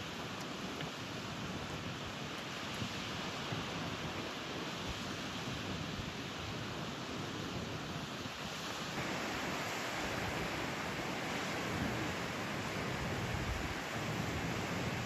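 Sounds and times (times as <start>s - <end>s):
ocean surf breaking: 8.8s - 15.0s.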